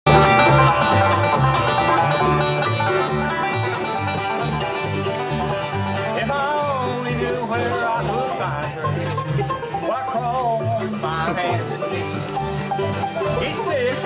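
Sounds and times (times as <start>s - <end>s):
instrumental bluegrass music: 0.0s - 14.0s.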